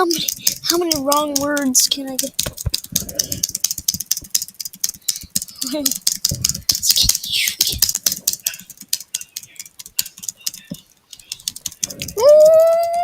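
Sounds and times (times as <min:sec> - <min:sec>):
fast typing on keyboard: 0:00.0 - 0:13.0.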